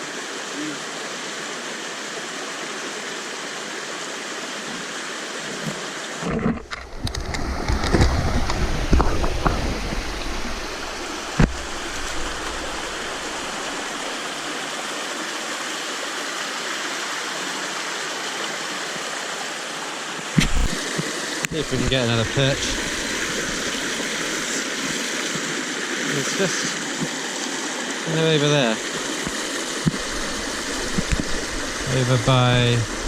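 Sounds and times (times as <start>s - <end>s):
river water rushing: 0.0s - 33.0s
low rumbling and knocks: 6.2s - 14.1s.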